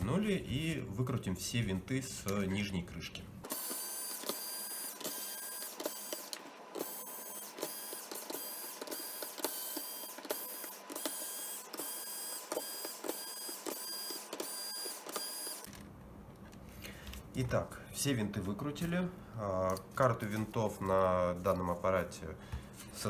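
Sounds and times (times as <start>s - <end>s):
screwdriver whining: 3.4s - 15.8s.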